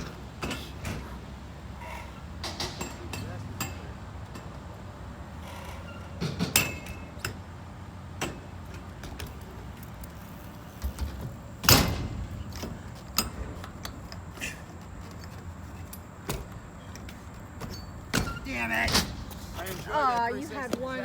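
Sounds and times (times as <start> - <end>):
bmx bike clicks and knocks: 2.4 - 4.6, 5.5 - 7.5, 8.2 - 19.5
bike landing thud: 10.7 - 13.6, 17.4 - 19.6.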